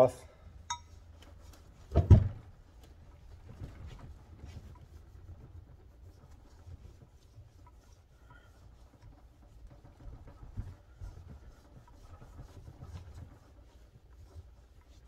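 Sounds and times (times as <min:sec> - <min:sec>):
cloth rubbing on metal: 0:00.0 - 0:15.0
short thump: 0:01.9 - 0:02.5.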